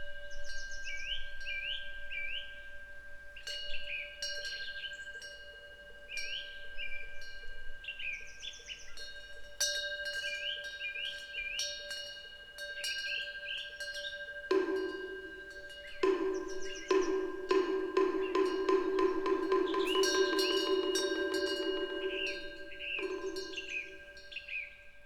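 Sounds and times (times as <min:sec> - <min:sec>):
wind bell ringing: 0:00.0 - 0:25.0
bird chirping: 0:15.7 - 0:24.9.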